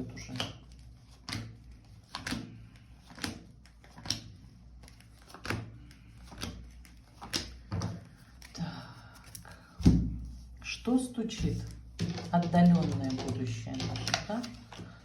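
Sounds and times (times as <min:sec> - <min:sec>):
cards tapping onto a table: 0:07.2 - 0:08.1.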